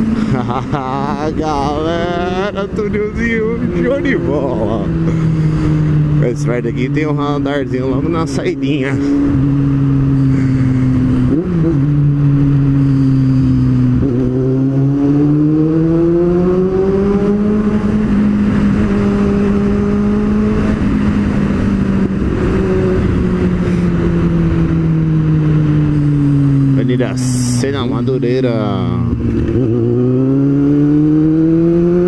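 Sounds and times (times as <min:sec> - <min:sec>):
motorcycle engine revving: 0:00.0 - 0:32.0.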